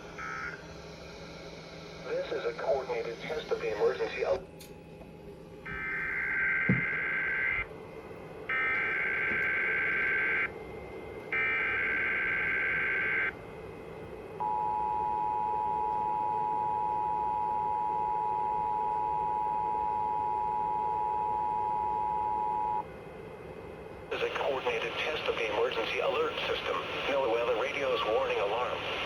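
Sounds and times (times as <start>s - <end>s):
steady two-tone attention signal: 14.4s - 22.8s.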